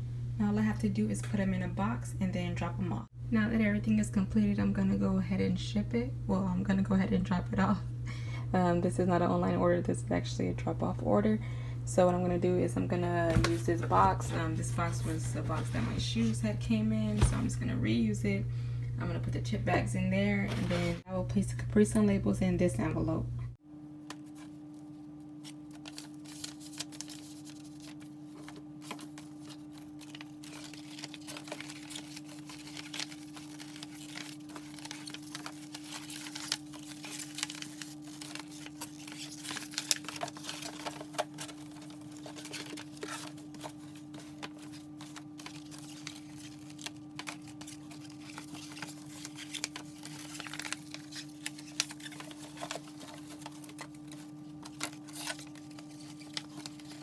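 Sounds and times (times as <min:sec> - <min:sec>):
steady low hum: 0:00.0 - 0:57.0
packaging crinkling and rustling: 0:13.2 - 0:17.6, 0:24.1 - 0:57.0.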